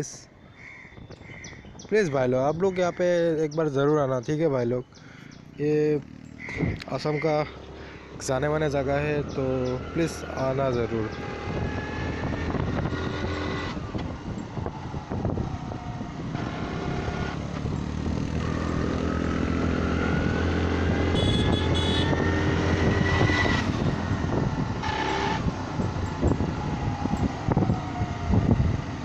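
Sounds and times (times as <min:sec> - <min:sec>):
vehicle engine running: 0:05.0 - 0:29.0
short horn toots: 0:21.1 - 0:22.2.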